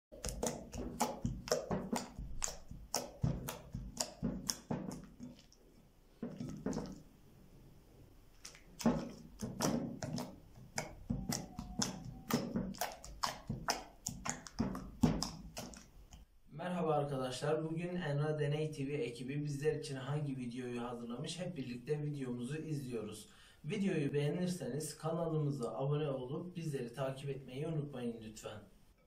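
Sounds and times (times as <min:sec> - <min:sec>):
wet clicks and pops of slime: 0:00.2 - 0:05.6, 0:08.4 - 0:16.2.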